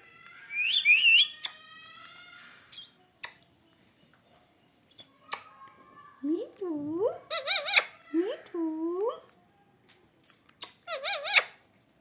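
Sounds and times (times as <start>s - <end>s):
parrot warbling whistle: 0.5s - 1.6s.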